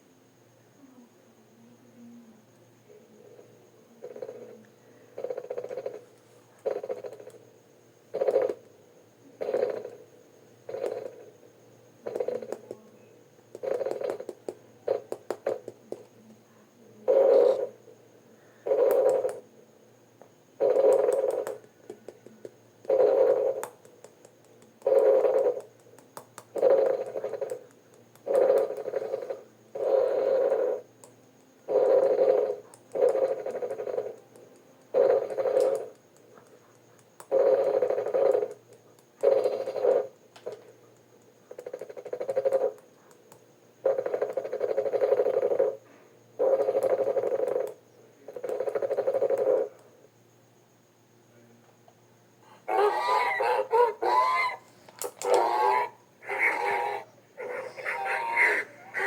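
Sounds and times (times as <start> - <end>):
short creature calls: 52.7 - 59.0.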